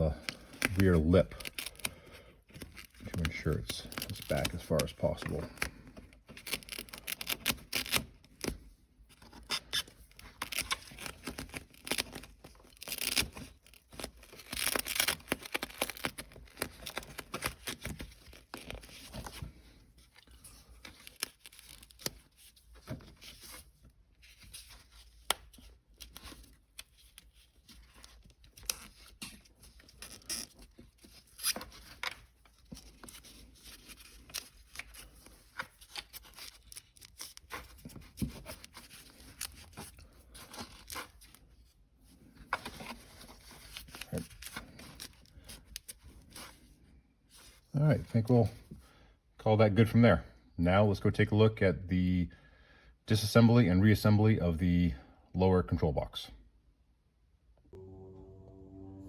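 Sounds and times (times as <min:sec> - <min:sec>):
foam rustling and tearing: 0:00.0 - 0:41.7.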